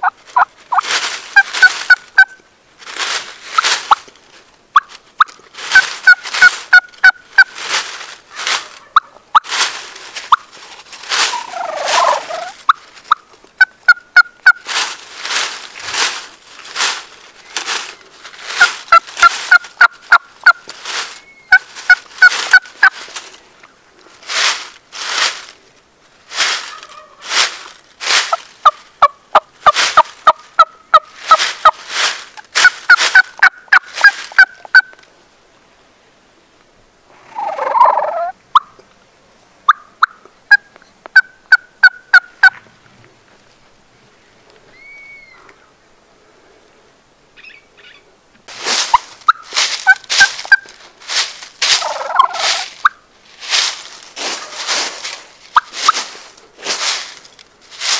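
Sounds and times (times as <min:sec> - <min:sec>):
turkeys gobbling: 0:00.0 - 0:02.4, 0:04.8 - 0:07.6, 0:08.3 - 0:09.6, 0:11.1 - 0:14.6, 0:17.8 - 0:20.6, 0:21.5 - 0:23.0, 0:28.3 - 0:31.8, 0:32.6 - 0:34.9, 0:37.2 - 0:38.7, 0:39.7 - 0:40.6, 0:41.2 - 0:42.6, 0:48.8 - 0:50.8, 0:51.6 - 0:53.0, 0:55.6 - 0:56.1
turkey yelping: 0:08.5 - 0:09.4, 0:11.2 - 0:14.6, 0:21.2 - 0:23.0, 0:26.6 - 0:27.3, 0:37.3 - 0:38.7, 0:44.7 - 0:45.5, 0:48.9 - 0:50.7, 0:51.8 - 0:53.0.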